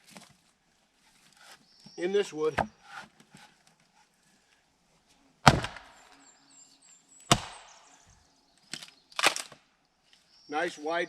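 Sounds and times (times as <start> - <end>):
axe chopping wood: 5.4 - 6.0, 7.3 - 7.8.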